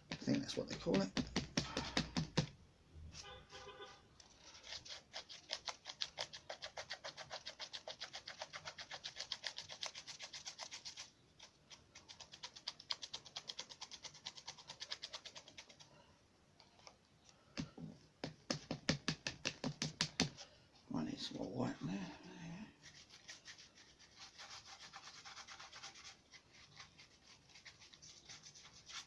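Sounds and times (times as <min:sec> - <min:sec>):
paintbrush scrubbing on paper: 0:03.5 - 0:16.0, 0:19.6 - 0:29.0.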